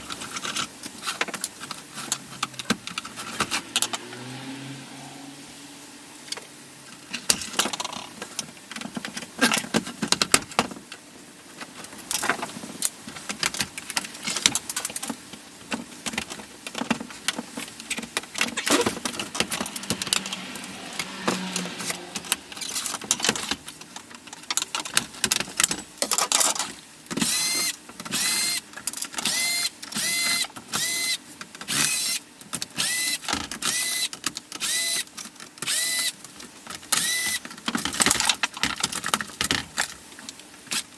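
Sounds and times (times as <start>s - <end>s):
plastic parts clicking and knocking: 7.1s - 11.0s, 11.6s - 20.4s, 22.2s - 40.9s
electric screwdriver whirring: 27.2s - 28.6s, 29.2s - 32.2s, 32.8s - 36.2s, 37.0s - 37.4s.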